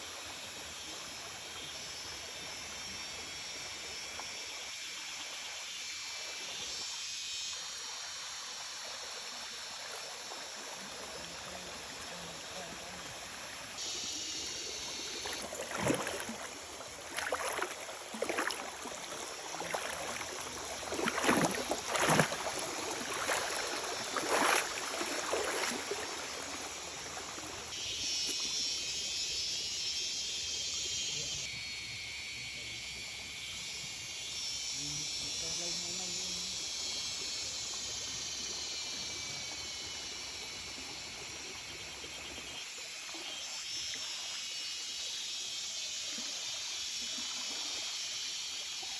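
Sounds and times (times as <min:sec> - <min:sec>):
running water rushing: 0:07.7 - 0:27.8
sharp water splashing: 0:14.9 - 0:27.7.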